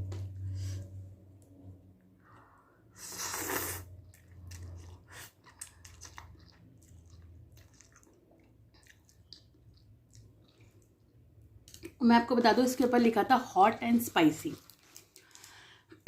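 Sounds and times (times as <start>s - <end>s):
chewing with wet clicks: 3.9s - 12.0s, 14.6s - 15.8s.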